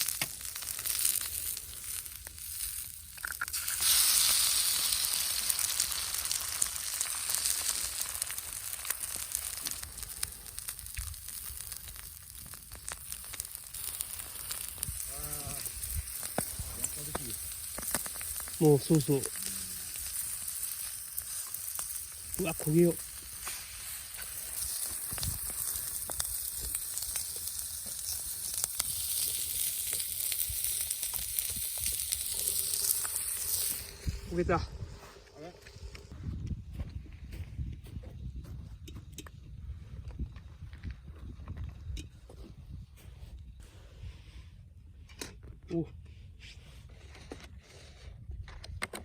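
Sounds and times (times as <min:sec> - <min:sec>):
food sizzling in a hot pan: 0:00.0 - 0:35.0
crackles and pops: 0:00.0 - 0:36.6, 0:48.4 - 0:49.0.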